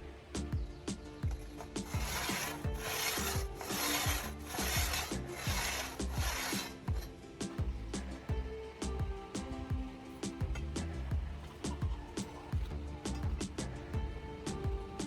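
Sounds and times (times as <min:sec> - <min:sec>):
hand tool rasping: 0:01.3 - 0:07.2.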